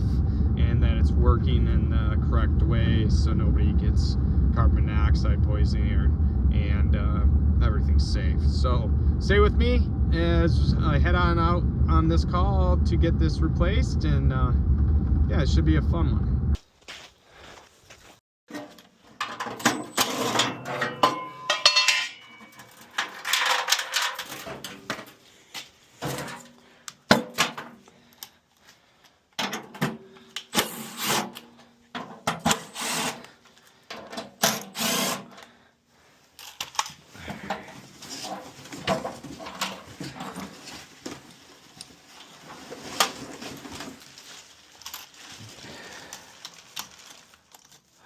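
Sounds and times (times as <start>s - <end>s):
tools and metal parts clattering: 18.5s - 25.2s, 26.0s - 27.8s, 29.4s - 33.2s, 33.8s - 35.4s, 36.4s - 40.9s.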